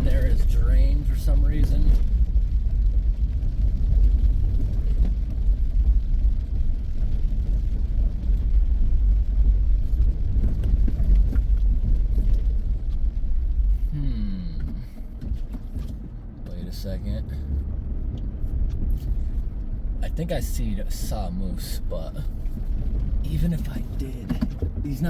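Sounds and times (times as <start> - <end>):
vehicle engine rumble: 0.0 - 25.0.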